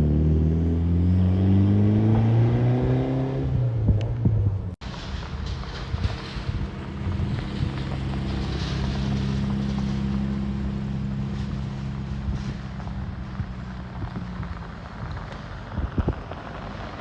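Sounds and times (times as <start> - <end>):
car engine running: 3.7 - 17.0.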